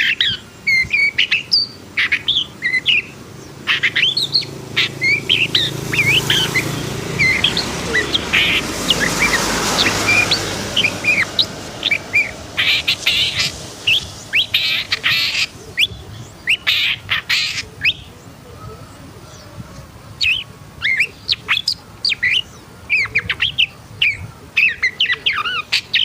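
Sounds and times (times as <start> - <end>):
harsh rasping bird notes: 0.0 - 18.0
bird singing chirps and whistles: 0.0 - 18.1, 20.2 - 26.0.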